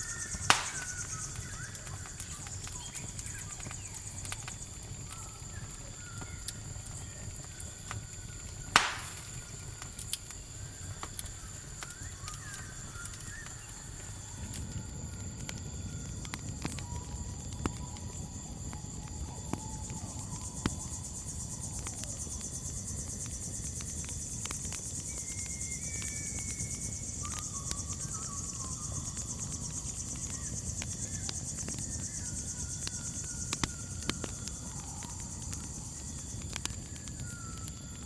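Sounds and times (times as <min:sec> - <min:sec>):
faint drawn-out whistling tones: 0:00.0 - 0:15.2, 0:25.0 - 0:38.0
crackling campfire: 0:00.0 - 0:38.0
crickets chirring: 0:00.0 - 0:38.0.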